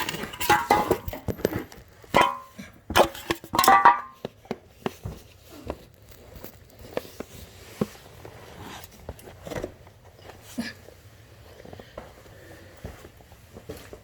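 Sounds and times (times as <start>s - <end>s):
tools clattering and knocking: 0.0s - 5.2s.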